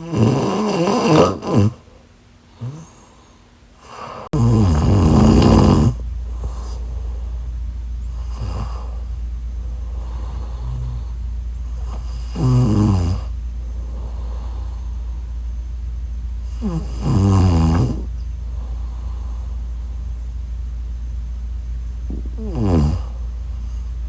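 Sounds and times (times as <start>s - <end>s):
woman snoring: 0.0s - 1.8s, 2.5s - 7.4s, 8.1s - 15.2s, 16.4s - 19.9s, 22.1s - 23.9s
steady low hum: 0.0s - 24.0s.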